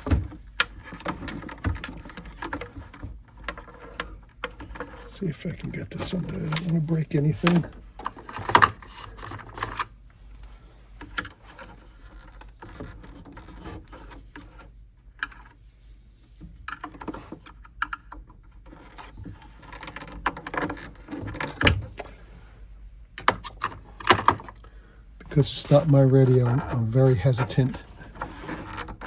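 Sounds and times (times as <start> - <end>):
tool clicking and scraping: 25.2 - 29.0.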